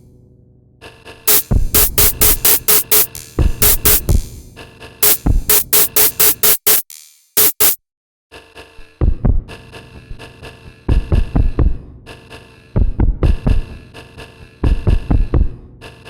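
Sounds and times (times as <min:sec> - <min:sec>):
electronic drum pattern: 0:01.3 - 0:04.4, 0:05.0 - 0:07.8.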